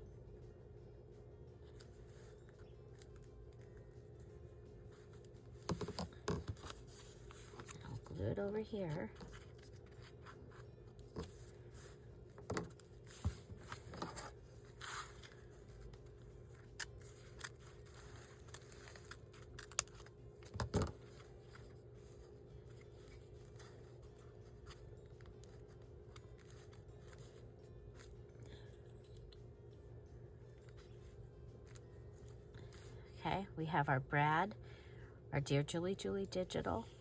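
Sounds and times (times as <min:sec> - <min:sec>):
faint steady hum: 0:00.0 - 0:37.0
paper rustling and scraping: 0:12.6 - 0:28.1.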